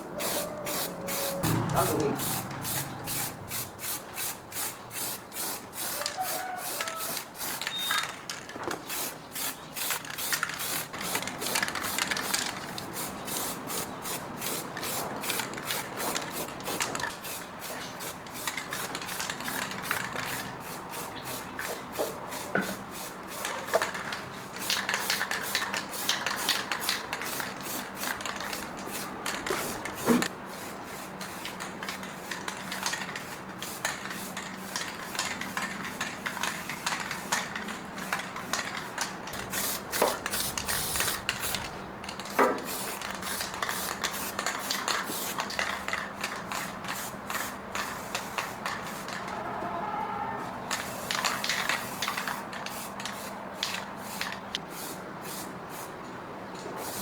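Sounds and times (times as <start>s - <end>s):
rhythmic scraping strokes: 0.3s - 4.1s
sharp knock: 1.4s - 3.5s.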